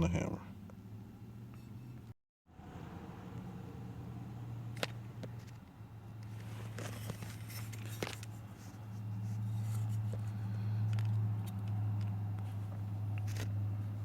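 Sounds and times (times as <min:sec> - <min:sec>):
metal scrape: 0:06.3 - 0:10.8.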